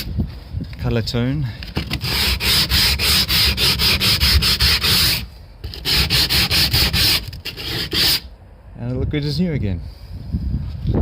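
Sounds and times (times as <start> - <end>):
sandpaper rubbing on wood: 1.9 - 8.3.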